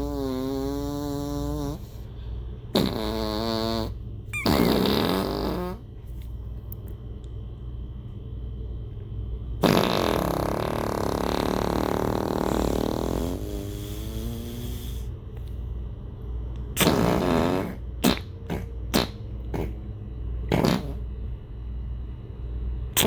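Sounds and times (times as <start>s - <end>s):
fart sounds: 0.0s - 2.0s, 2.7s - 5.9s, 9.6s - 15.0s, 16.8s - 19.8s, 20.5s - 21.1s.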